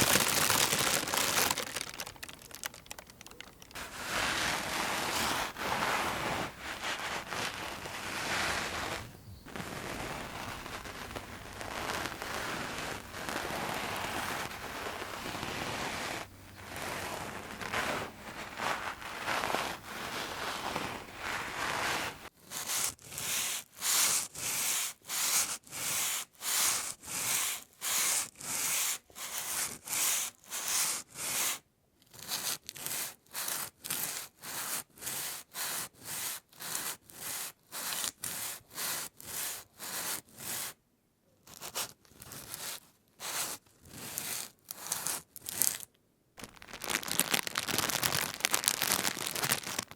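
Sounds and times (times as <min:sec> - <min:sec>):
plastic sheeting crinkling: 0:00.0 - 0:22.3, 0:44.2 - 0:49.9.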